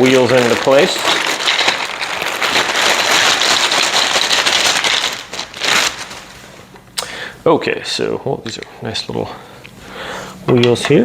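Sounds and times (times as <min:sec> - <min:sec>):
plastic packaging crinkling: 0:00.0 - 0:06.7.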